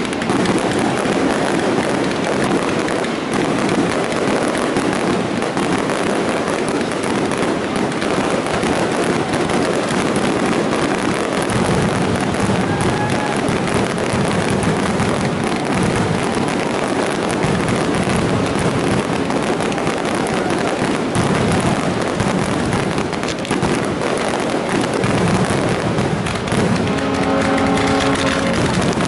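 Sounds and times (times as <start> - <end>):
fireworks crackles and bangs: 0.0 - 29.0
steady horn blast: 26.8 - 29.0.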